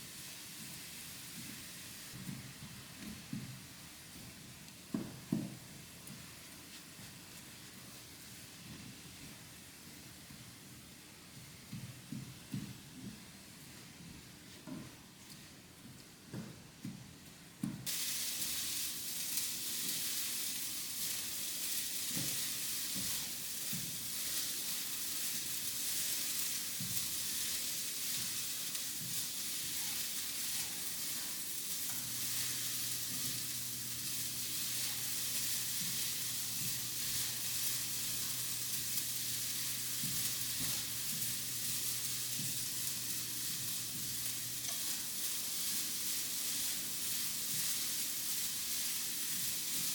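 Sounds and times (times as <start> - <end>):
meat sizzling in a pan: 0.0 - 4.1, 17.8 - 49.9.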